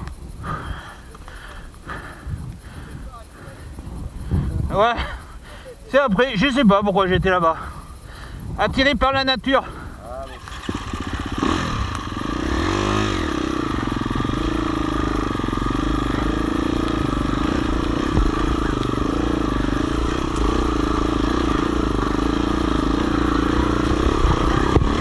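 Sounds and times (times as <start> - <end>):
motorcycle engine revving: 9.7 - 25.0.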